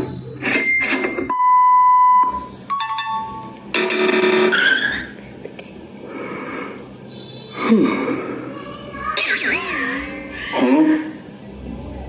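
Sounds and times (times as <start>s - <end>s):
steady beep: 0.6s - 4.6s.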